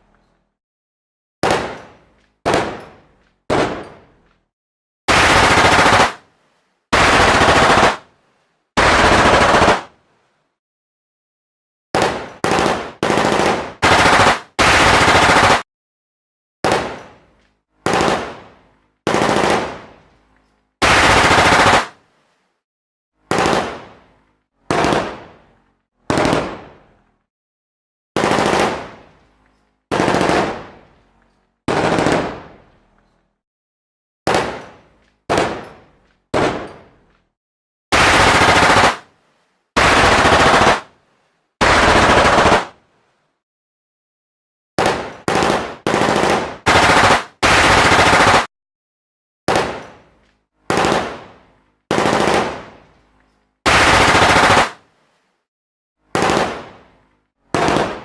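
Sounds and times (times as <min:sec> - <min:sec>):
machine gun bursts: 0:05.1 - 0:06.2, 0:07.0 - 0:08.0, 0:08.8 - 0:09.9, 0:38.0 - 0:39.0, 0:39.8 - 0:40.8, 0:41.6 - 0:42.7.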